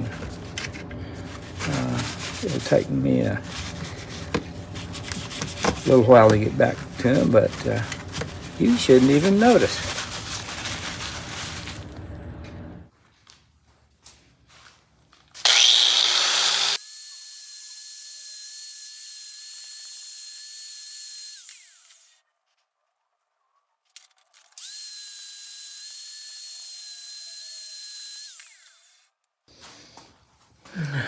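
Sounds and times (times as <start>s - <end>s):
small power tool whining: 15.4s - 22.2s, 24.4s - 29.2s.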